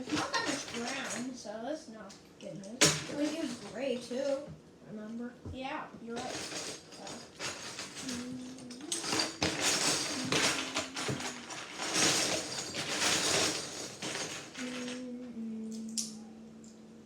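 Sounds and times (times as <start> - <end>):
plastic bricks clattering: 6.2 - 15.0
low humming tone: 7.0 - 13.2, 14.0 - 17.0.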